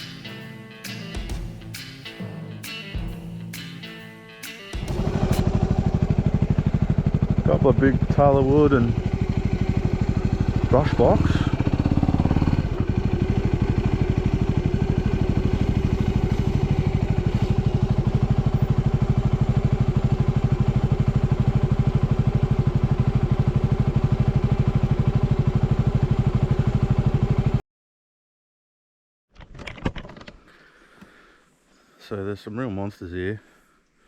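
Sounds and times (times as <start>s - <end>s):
motorcycle engine running: 4.8s - 27.6s.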